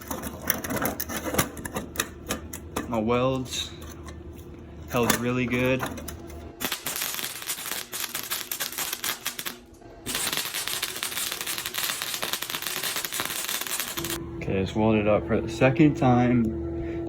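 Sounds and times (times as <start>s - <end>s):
welding arc crackling: 6.6s - 14.2s.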